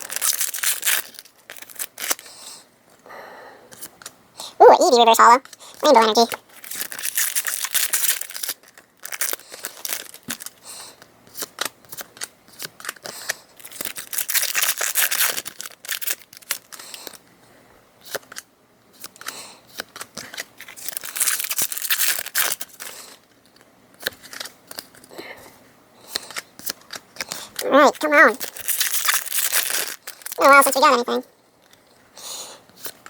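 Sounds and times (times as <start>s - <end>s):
foil wrapper crinkling and tearing: 0.0s - 2.4s, 5.0s - 10.7s, 11.3s - 17.2s, 19.0s - 25.0s, 26.1s - 31.9s.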